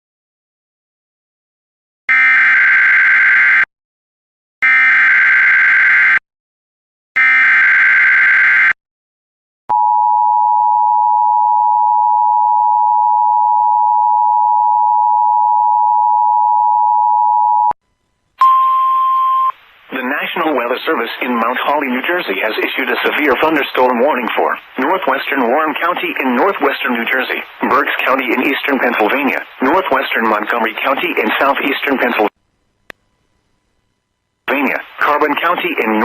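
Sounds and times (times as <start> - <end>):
single tone: 9.7 - 17.8, 18.4 - 19.6
two-tone attention signal: 18.4 - 19.5.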